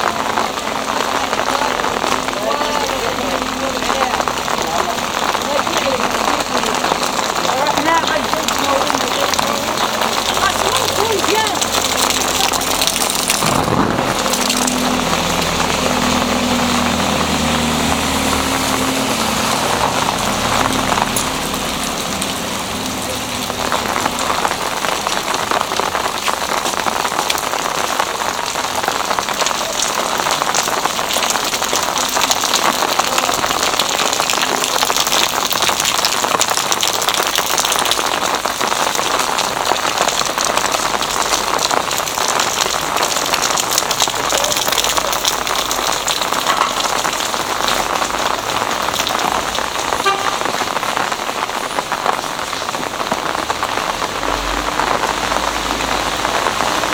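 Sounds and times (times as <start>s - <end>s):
vehicle engine running: 0.0s - 26.2s
rain falling on street: 0.0s - 56.9s.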